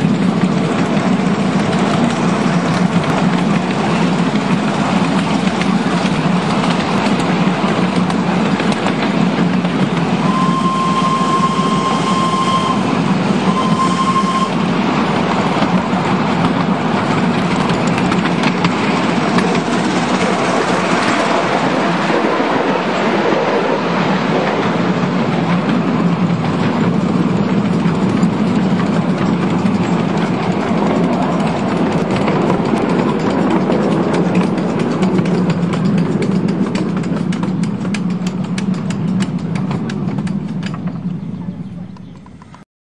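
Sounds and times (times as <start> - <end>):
train wheels clattering on rails: 0.0 - 42.6
steam whistle: 10.2 - 14.6.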